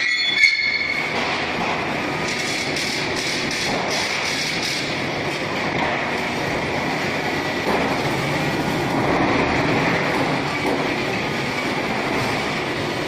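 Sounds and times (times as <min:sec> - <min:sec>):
block making machine clatter: 0:00.0 - 0:13.0.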